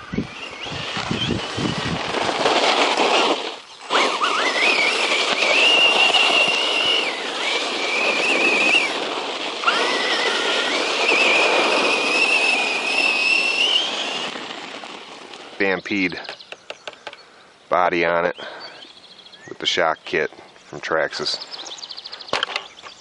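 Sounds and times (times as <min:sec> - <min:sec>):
electric motor whining: 0:00.0 - 0:15.5
steady rushing noise: 0:00.0 - 0:17.2.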